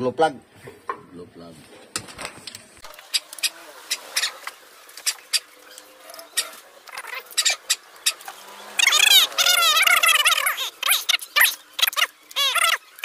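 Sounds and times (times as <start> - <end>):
birds chirping rapidly: 2.8 - 13.0.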